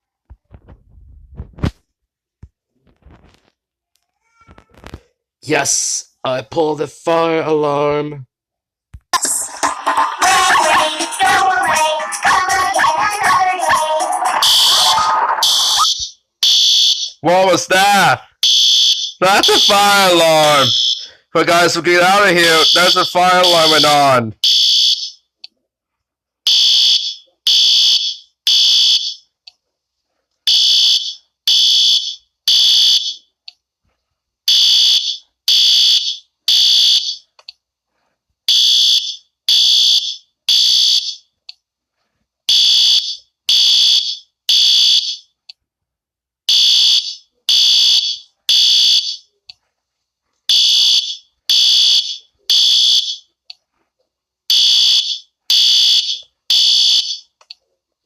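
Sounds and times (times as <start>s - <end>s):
fire alarm beeping: 14.4s - 17.2s, 18.4s - 21.8s, 22.4s - 25.2s, 26.5s - 29.2s, 30.5s - 33.2s, 34.5s - 37.3s, 38.5s - 41.2s, 42.5s - 45.3s, 46.5s - 49.3s, 50.5s - 53.3s, 54.5s - 57.3s.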